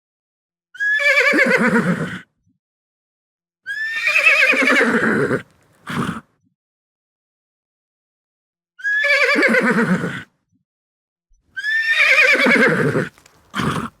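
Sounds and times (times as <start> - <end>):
horse whinnying: 0.8 - 2.2, 3.7 - 6.3, 8.8 - 10.3, 11.6 - 14.0.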